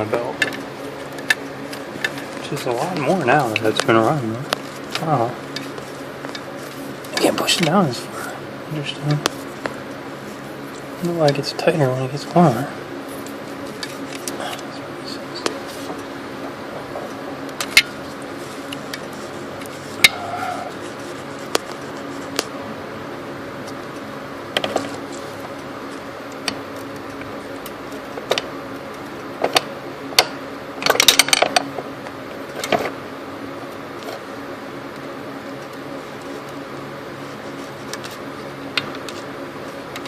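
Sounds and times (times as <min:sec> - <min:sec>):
steady hum: 0:00.0 - 0:40.0.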